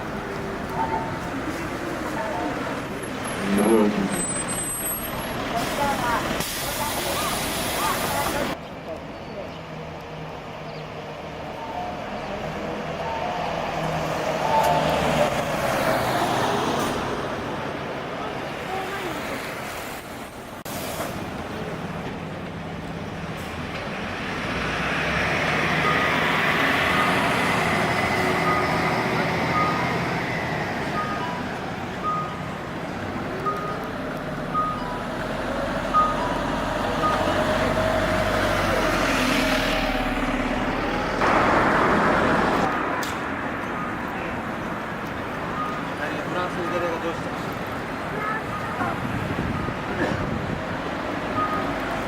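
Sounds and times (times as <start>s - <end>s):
bus engine running: 0.0s - 8.6s, 12.2s - 52.0s
road noise: 0.0s - 52.0s
bus turn-signal chime beeping: 28.4s - 30.2s, 30.8s - 32.5s, 33.4s - 33.9s, 34.5s - 35.1s, 35.9s - 37.4s, 45.5s - 47.4s, 51.3s - 51.9s
loud rush of noise: 38.2s - 43.6s.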